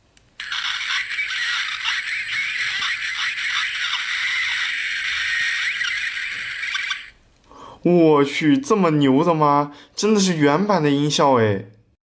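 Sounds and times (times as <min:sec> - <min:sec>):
tinny electronic music from toy speaker: 0:00.4 - 0:07.2
toy sound effects: 0:00.4 - 0:07.2.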